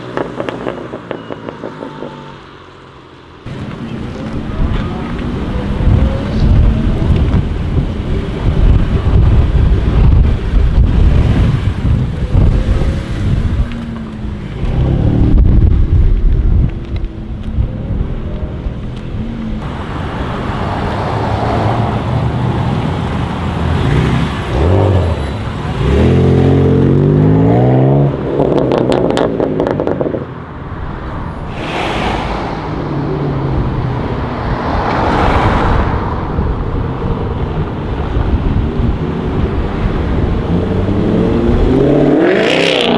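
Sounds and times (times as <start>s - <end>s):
exhaust pops and crackles: 0.0s - 2.2s
car engine revving: 19.6s - 30.3s, 31.3s - 42.9s
loud rushing noise: 31.0s - 37.9s.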